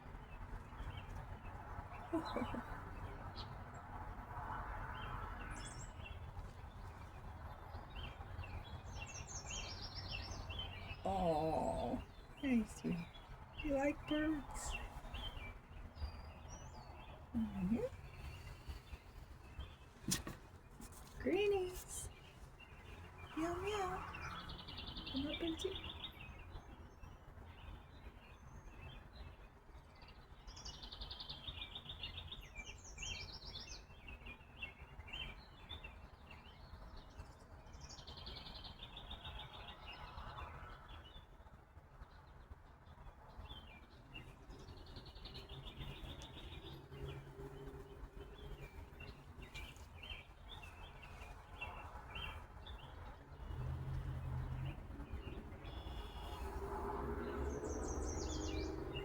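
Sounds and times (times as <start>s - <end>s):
songbirds chirping: 0.0s - 59.0s.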